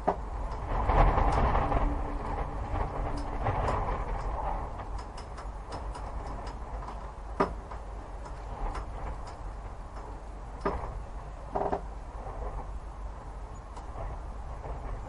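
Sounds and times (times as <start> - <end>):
faint ticks and clicks: 0.0 - 12.6
low rumble: 0.0 - 15.0.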